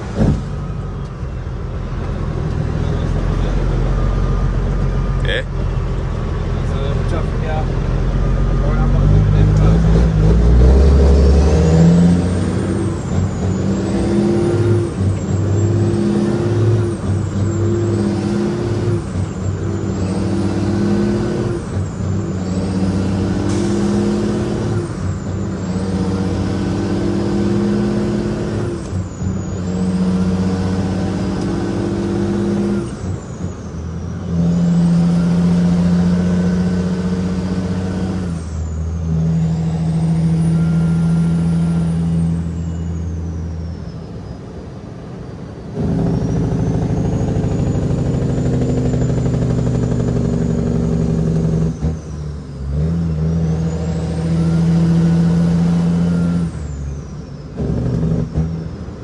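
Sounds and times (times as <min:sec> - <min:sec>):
diesel truck engine pulling: 0:00.0 - 0:59.0
high whistle: 0:10.6 - 0:44.8, 0:52.8 - 0:57.4.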